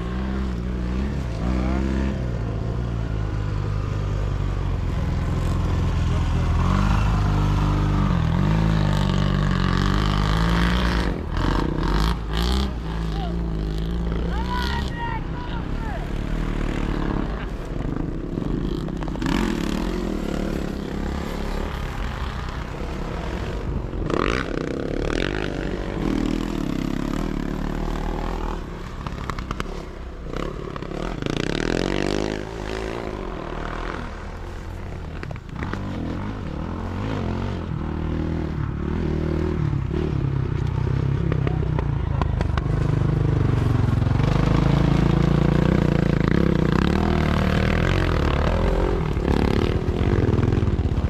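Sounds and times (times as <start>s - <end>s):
motorcycle engines revving: 0.0s - 51.0s.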